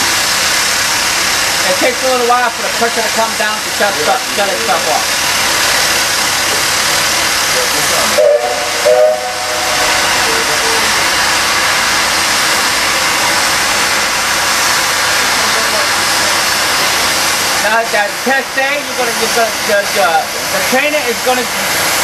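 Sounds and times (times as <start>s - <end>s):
steam venting from safety valve: 0.0s - 22.0s
short tones: 8.2s - 10.2s.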